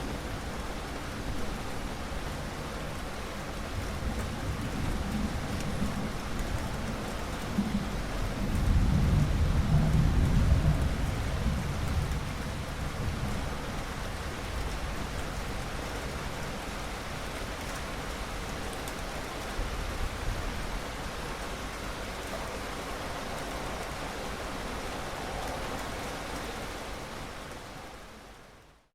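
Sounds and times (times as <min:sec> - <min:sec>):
steady rain falling: 0:00.0 - 0:28.9
thunder rumble: 0:03.9 - 0:15.1.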